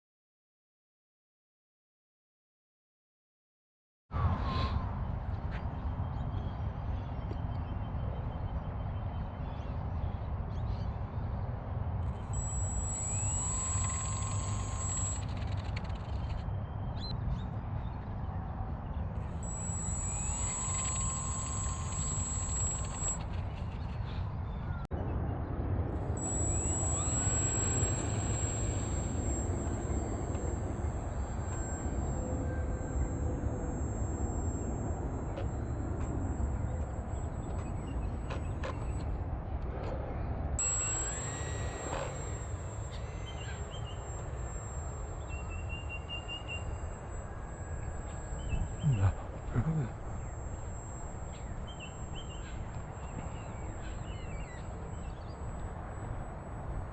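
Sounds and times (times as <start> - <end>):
model airplane motor whine: 12.1 - 16.5, 19.2 - 24.2, 26.0 - 39.1, 40.6 - 56.9.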